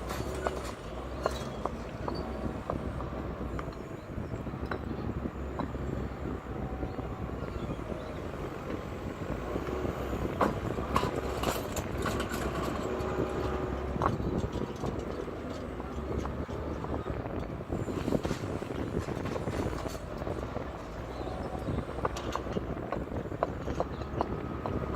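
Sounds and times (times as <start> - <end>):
paving stones clinking together: 0.0 - 5.8, 6.8 - 24.9
diesel engine running: 0.0 - 24.9.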